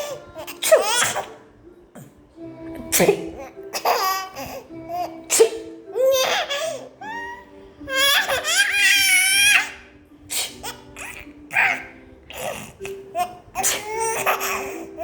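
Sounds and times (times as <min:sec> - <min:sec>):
background music: 0:00.0 - 0:15.0
baby squealing: 0:06.0 - 0:09.8, 0:10.4 - 0:15.0.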